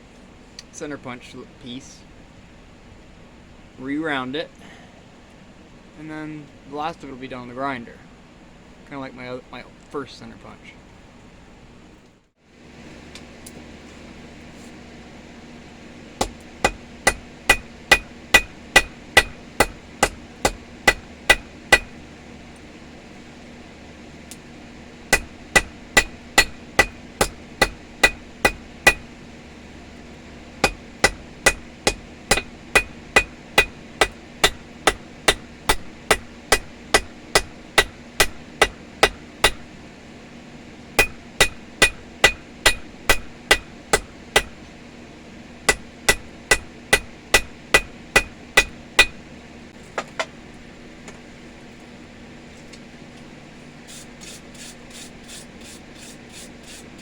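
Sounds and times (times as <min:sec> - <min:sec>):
hammer striking steel on anvil: 0:16.2 - 0:22.0, 0:25.1 - 0:29.1, 0:30.6 - 0:39.7, 0:41.0 - 0:44.6, 0:45.7 - 0:49.2.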